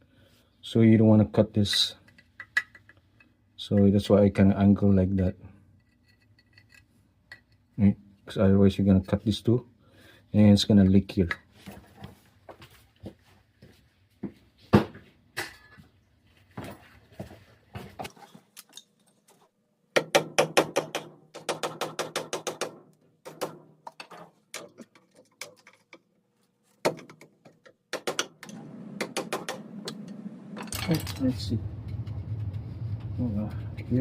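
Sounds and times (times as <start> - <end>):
screwdriver knocking and scraping plastic: 20.0 - 26.1, 26.8 - 29.7
steady low hum: 28.5 - 34.0.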